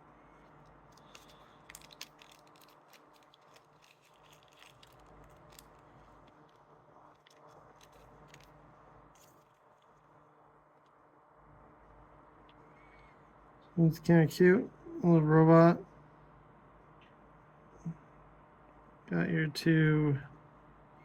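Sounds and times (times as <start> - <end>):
low steady hum: 0.0 - 21.0
faint crinkling and clicking: 0.3 - 11.0.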